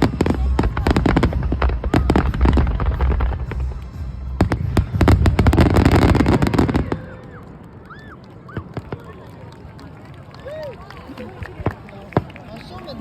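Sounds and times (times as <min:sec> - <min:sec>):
low rumble: 0:00.0 - 0:06.8
fireworks bangs and crackles: 0:00.0 - 0:09.4.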